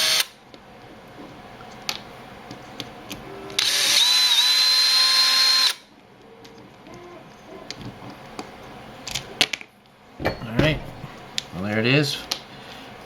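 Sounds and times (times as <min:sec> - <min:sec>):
power drill motor whine: 0:00.0 - 0:00.4, 0:03.6 - 0:05.9.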